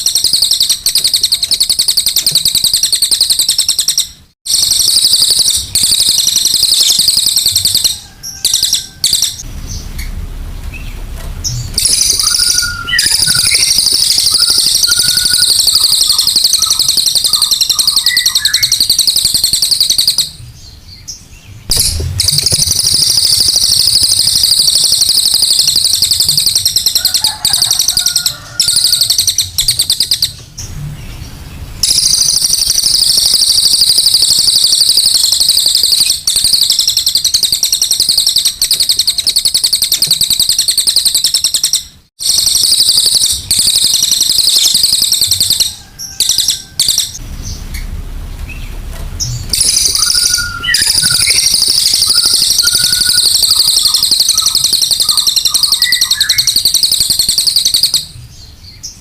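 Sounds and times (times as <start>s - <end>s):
songbird shrill trill: 11.8s - 20.4s, 49.5s - 58.1s.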